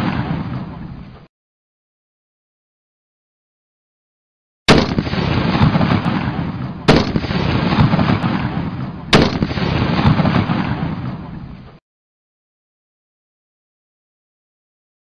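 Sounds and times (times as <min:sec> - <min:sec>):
rifle shots with rolling echo: 0:00.0 - 0:00.9, 0:04.7 - 0:11.4.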